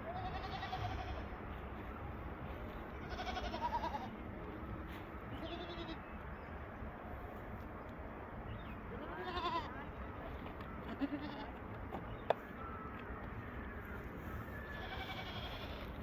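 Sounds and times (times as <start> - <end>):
goats bleating: 0.1 - 1.4, 3.0 - 4.2, 5.4 - 6.0, 9.0 - 9.8, 10.9 - 11.6, 14.7 - 16.0.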